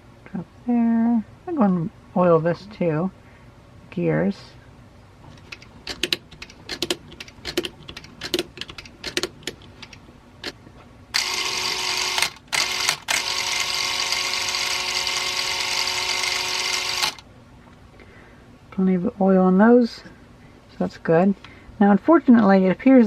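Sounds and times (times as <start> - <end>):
irregular clicks: 5.4 - 10.6
film camera clockwork whirring: 11.1 - 17.2.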